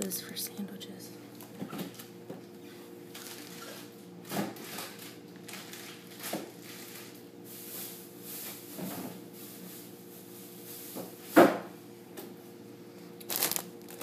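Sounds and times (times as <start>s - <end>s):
refrigerator compressor humming: 0.0s - 14.0s
plastic packaging rustling: 3.1s - 3.9s, 4.6s - 7.2s, 13.2s - 14.0s.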